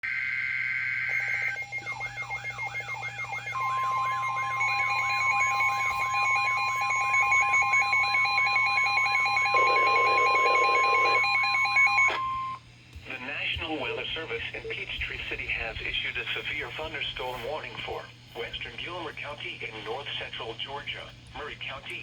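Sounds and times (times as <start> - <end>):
electronic buzzing: 0.1 - 12.6
sweeping whoop alarm tone: 0.2 - 12.6
two-tone data burst: 1.0 - 12.6
steady electronic tone: 1.1 - 12.6.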